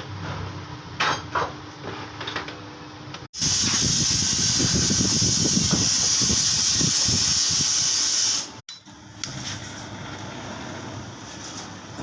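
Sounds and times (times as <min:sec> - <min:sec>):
loud gas hiss: 0:03.4 - 0:08.6.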